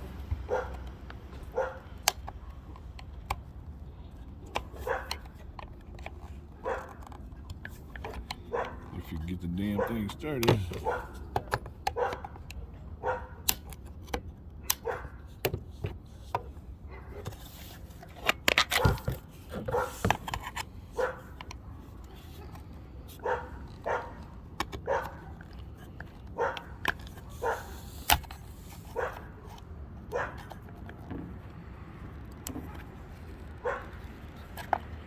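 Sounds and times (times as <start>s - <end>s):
dog barking: 0.5s - 0.8s, 1.5s - 1.8s, 4.6s - 5.2s, 6.6s - 7.0s, 8.1s - 8.9s, 9.6s - 10.1s, 10.7s - 11.2s, 12.0s - 12.3s, 13.0s - 13.4s, 14.6s - 15.2s, 19.6s - 20.0s, 21.0s - 21.3s, 23.2s - 25.4s, 26.4s - 26.7s, 27.3s - 27.8s, 29.0s - 29.4s, 30.1s - 30.5s, 33.6s - 34.0s
tools clicking and knocking: 9.6s - 12.6s, 17.2s - 20.7s.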